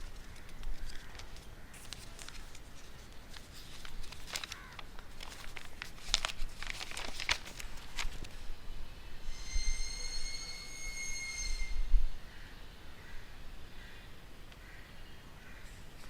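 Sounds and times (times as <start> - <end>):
paper crinkling and rustling: 0.0 - 8.5.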